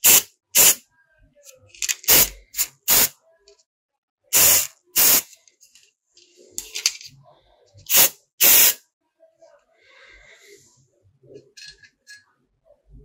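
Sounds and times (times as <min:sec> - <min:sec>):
hissing spray bursts: 0:04.4 - 0:05.3, 0:07.9 - 0:08.8.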